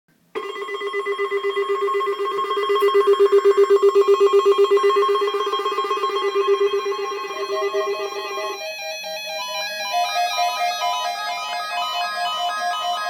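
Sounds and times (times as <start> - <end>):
electronic ringing tone: 0.4 - 13.0.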